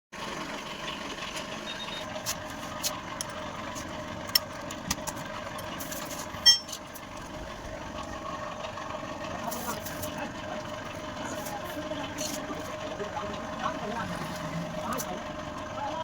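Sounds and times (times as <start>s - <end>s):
engine running: 0.2s - 16.0s
ringing metallic clink: 6.4s - 6.8s.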